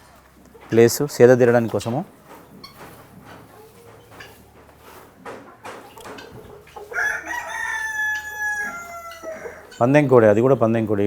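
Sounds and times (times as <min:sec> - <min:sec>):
faint scattered noises: 0:00.0 - 0:11.0
rooster crowing: 0:06.8 - 0:09.9.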